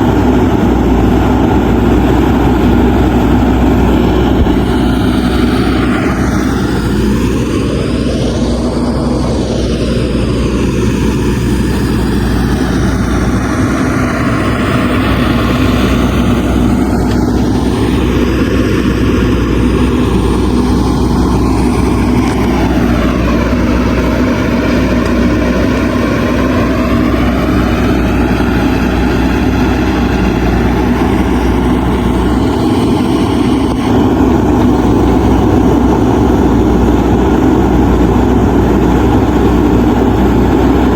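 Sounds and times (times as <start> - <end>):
diesel engine droning under load: 0.0 - 40.9.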